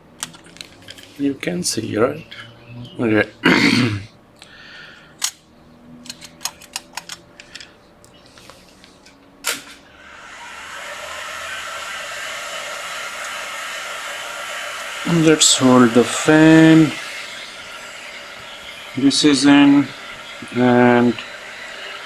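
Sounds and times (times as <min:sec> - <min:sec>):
clicks and taps of laptop parts: 0:06.0 - 0:07.7
air tool blowing air: 0:09.5 - 0:22.0.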